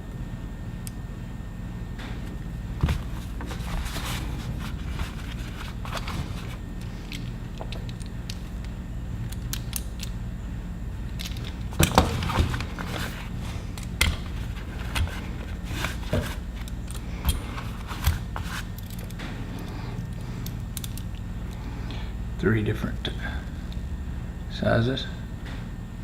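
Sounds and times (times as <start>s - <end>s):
steady low hum: 0.0s - 26.0s
tools and packaging handled: 2.8s - 8.5s, 11.2s - 19.2s.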